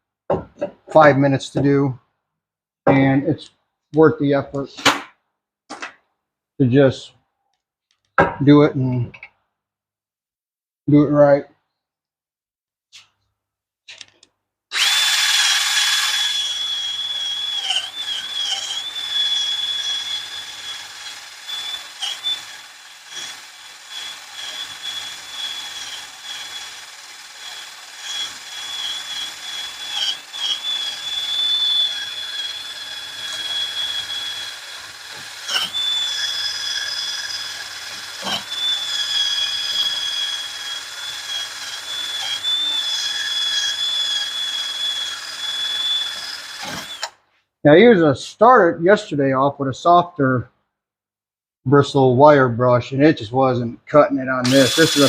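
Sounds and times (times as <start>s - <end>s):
wire brush power tool whine: 14.7s - 47.1s, 54.4s - 55.0s.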